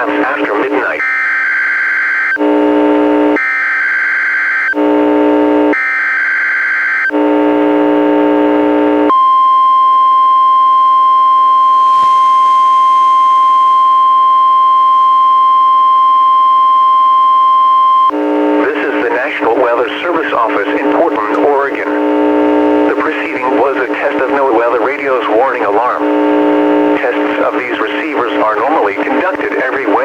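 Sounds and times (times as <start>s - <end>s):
harsh static buzz: 0.0s - 30.0s
warbling data tones: 10.6s - 14.5s.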